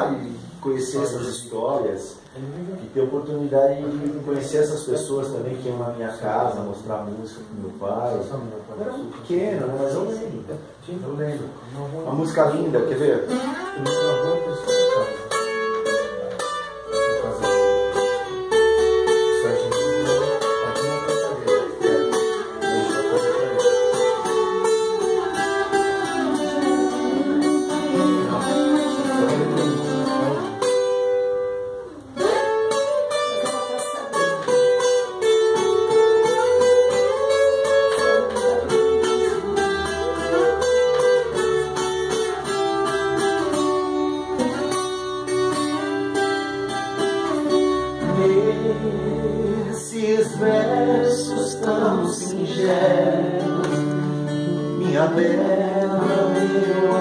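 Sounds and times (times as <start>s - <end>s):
acoustic plucked strings: 11.9s - 57.0s.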